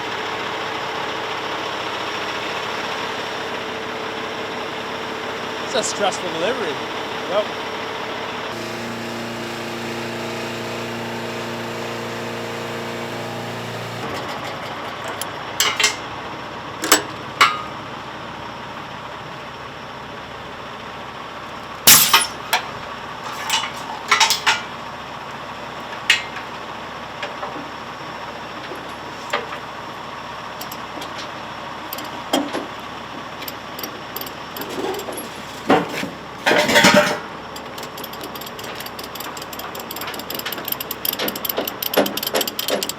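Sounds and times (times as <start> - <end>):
diesel engine running: 0.0 - 42.9
sharp metal clanks: 21.9 - 22.7.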